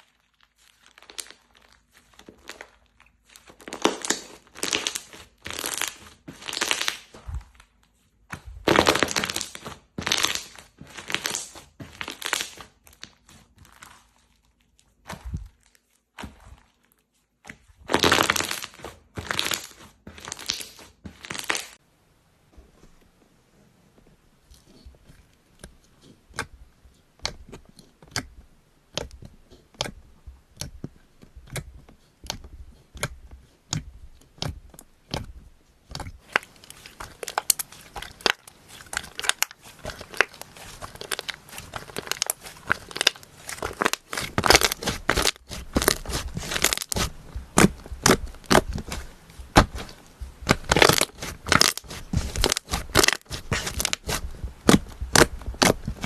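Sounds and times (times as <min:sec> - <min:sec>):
slime crackling pops: 0:36.2 - 0:56.0.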